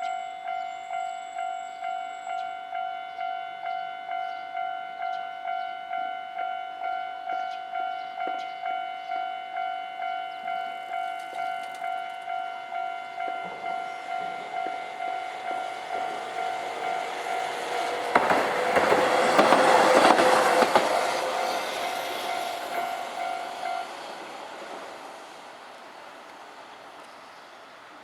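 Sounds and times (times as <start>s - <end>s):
level crossing warning bell ringing: 0.0s - 25.2s
tram wheels clacking over rail joints: 11.0s - 27.3s.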